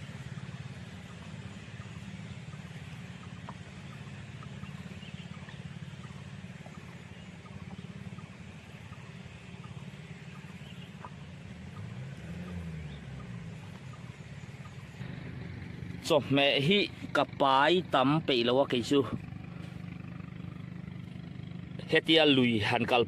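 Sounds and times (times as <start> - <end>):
faint chirps and ticks: 0.0 - 15.0
engine humming: 0.0 - 23.0.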